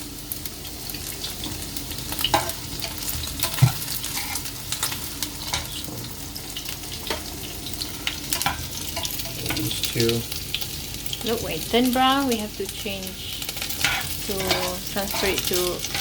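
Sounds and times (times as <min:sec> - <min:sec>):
meatballs sizzling in a pan: 0:00.0 - 0:16.0
utensil scraping a pan: 0:02.2 - 0:05.7, 0:13.5 - 0:16.0.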